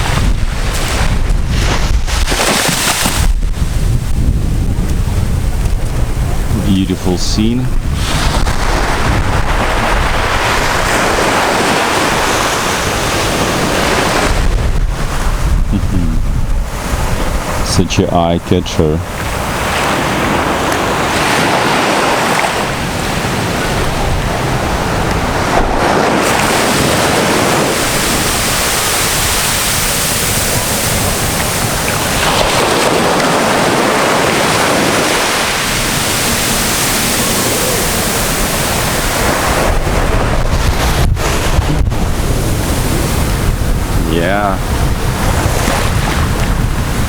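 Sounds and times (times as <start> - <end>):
surf washing onto beach: 0.0 - 47.0
wind buffeting microphone: 0.0 - 47.0.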